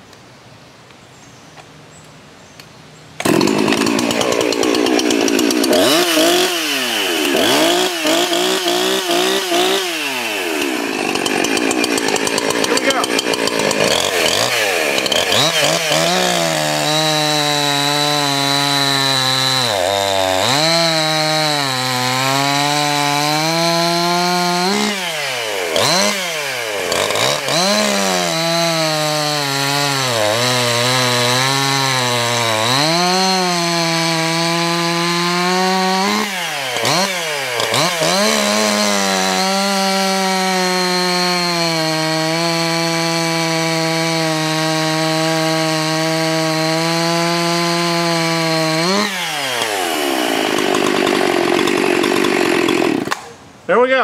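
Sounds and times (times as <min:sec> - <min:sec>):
chainsaw cutting log: 0:03.2 - 0:53.4.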